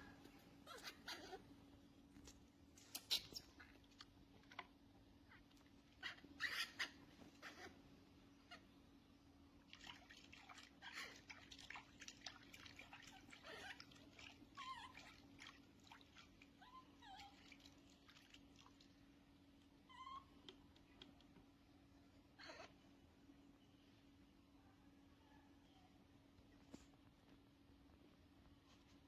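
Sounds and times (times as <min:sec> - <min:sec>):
baby monkey squeaking: 0:00.6 - 0:01.4, 0:06.0 - 0:07.8, 0:19.9 - 0:20.4.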